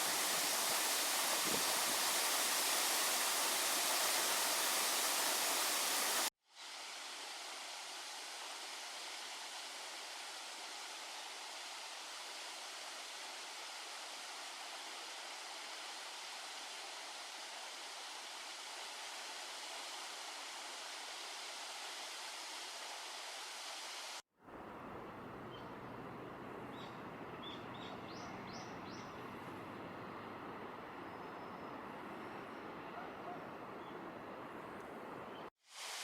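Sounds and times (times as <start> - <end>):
waterfall rushing: 0.0 - 6.3.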